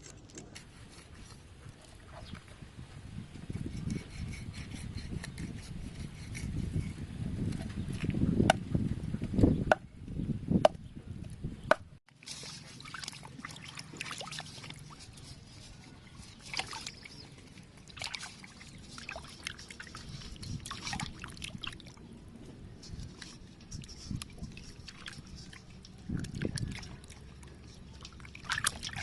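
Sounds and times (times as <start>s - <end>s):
water sloshing and trickling: 0.0s - 8.3s, 12.1s - 29.0s
light scrapes: 3.3s - 8.0s, 13.9s - 17.6s, 18.2s - 21.4s, 22.4s - 29.0s.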